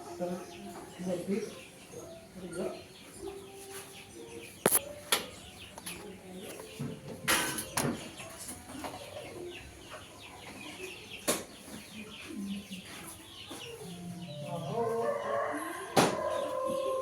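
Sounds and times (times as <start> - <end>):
birds chirping: 0.0 - 17.0.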